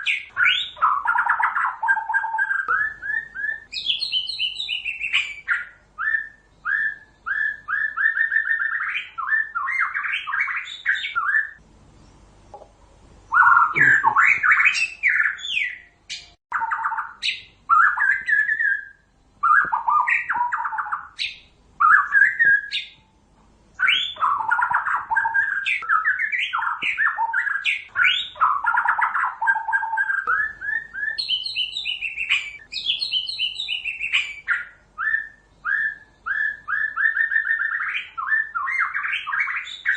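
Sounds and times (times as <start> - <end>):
bird singing whistled phrases: 0.0 - 11.6, 13.3 - 23.0, 23.8 - 39.9.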